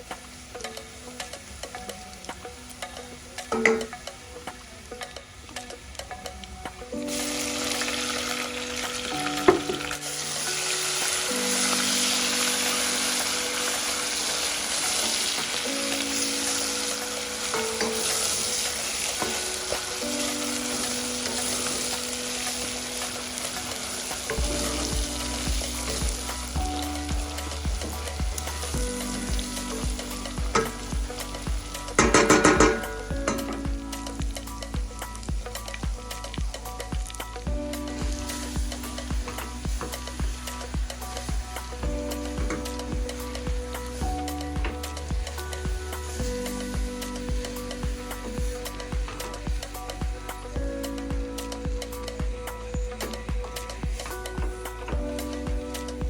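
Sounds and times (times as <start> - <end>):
background music: 0.0 - 56.0
food sizzling in a pot: 0.0 - 56.0
steady beat: 24.3 - 56.0.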